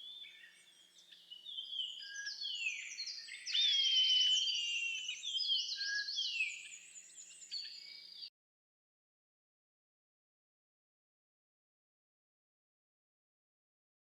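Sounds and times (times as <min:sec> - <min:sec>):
wild birds singing: 0:00.0 - 0:08.3.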